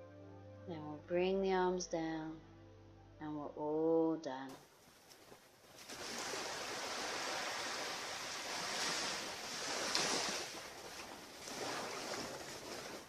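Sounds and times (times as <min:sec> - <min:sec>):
waves washing onto beach: 0:04.8 - 0:13.0.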